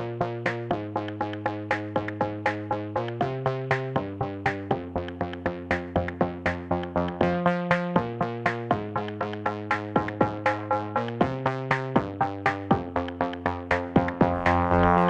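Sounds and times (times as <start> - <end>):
held bass notes: 0.0 - 15.0
plucked synthesizer notes: 0.0 - 15.0.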